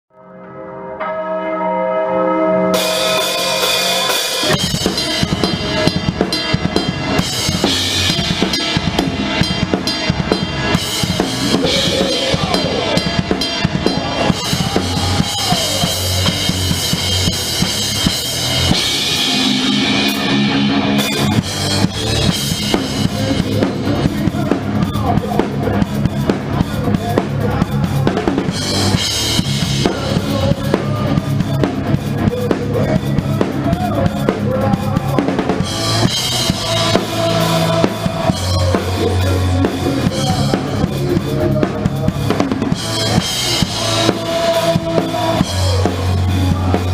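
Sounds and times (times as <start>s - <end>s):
heavy metal band playing live: 0.4s - 46.9s
ringing held tone: 18.1s - 22.4s.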